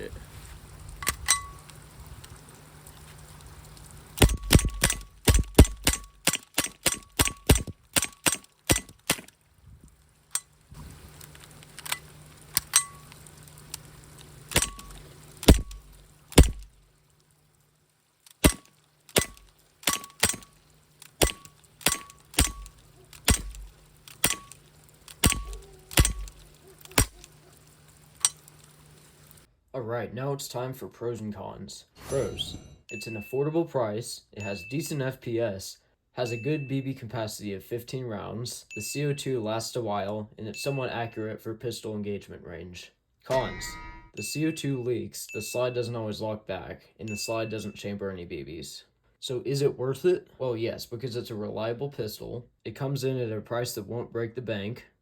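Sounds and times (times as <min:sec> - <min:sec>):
airsoft pistol shots: 0:04.2 - 0:09.3, 0:14.5 - 0:15.8, 0:16.4 - 0:16.7, 0:18.4 - 0:20.5, 0:21.2 - 0:24.6, 0:25.2 - 0:26.4, 0:27.0 - 0:27.2.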